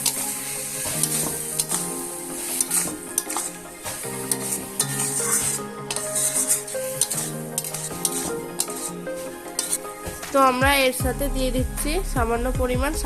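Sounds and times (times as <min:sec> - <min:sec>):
greens sizzling in a pan: 0:00.0 - 0:09.0
spatula scraping a pan: 0:00.0 - 0:10.1
background music: 0:00.0 - 0:13.0.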